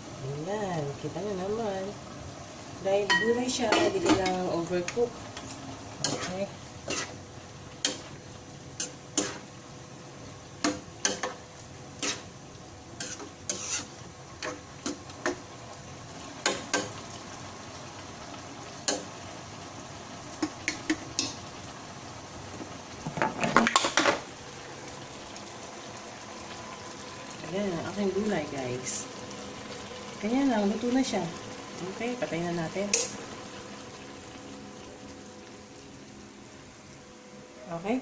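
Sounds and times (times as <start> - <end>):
vegetables sizzling: 0.0 - 38.0
spatula scraping a wok: 6.0 - 7.2, 8.8 - 9.5, 12.0 - 12.4, 13.0 - 15.0.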